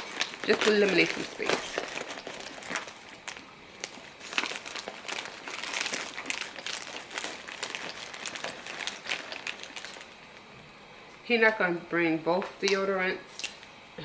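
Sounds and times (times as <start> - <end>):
plastic packaging crinkling: 0.0 - 10.2.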